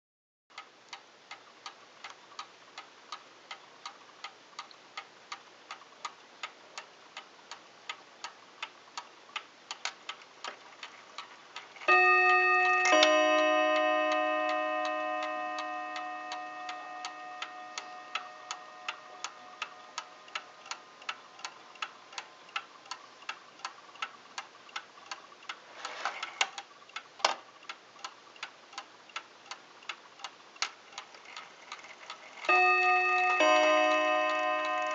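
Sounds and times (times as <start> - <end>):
clock ticking: 0.5 - 34.9
clock movement click: 9.7 - 21.5
two-tone bell chime: 11.9 - 20.6, 32.5 - 34.9.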